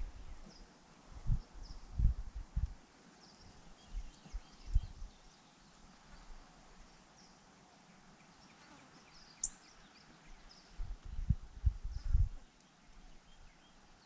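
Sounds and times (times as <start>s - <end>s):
faint bird chirps: 3.2s - 14.0s.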